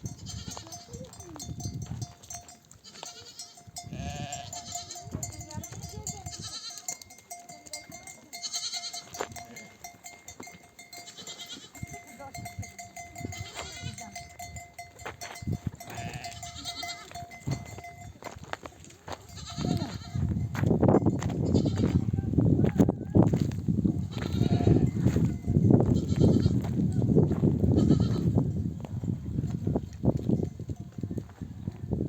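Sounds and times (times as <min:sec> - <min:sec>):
sheep bleating: 0:02.8 - 0:05.3, 0:06.2 - 0:07.0, 0:08.3 - 0:09.8, 0:10.9 - 0:12.1, 0:13.2 - 0:14.3, 0:15.8 - 0:17.4, 0:19.2 - 0:20.3, 0:21.4 - 0:22.2, 0:24.1 - 0:25.0, 0:26.0 - 0:26.7, 0:27.7 - 0:28.3.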